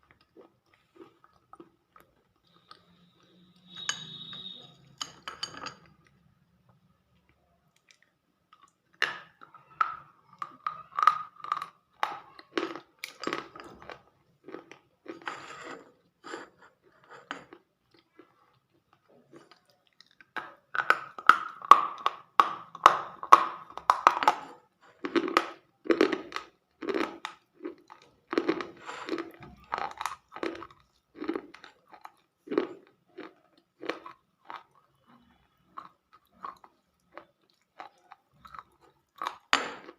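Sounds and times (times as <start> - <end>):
crunchy chewing: 24.0 - 39.9.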